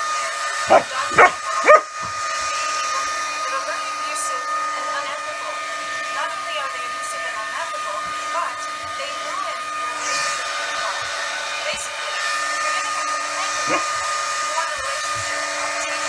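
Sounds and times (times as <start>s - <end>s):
dog barking: 0.7s - 2.2s, 13.4s - 14.0s.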